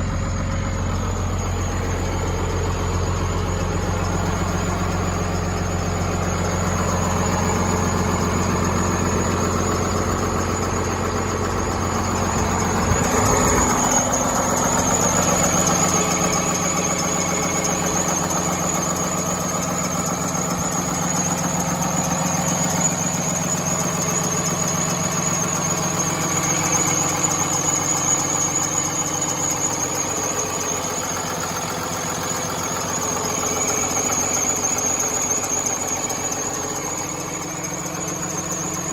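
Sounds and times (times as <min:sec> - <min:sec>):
engine idling: 0:00.0 - 0:38.9
high-pitched whine: 0:00.6 - 0:31.1.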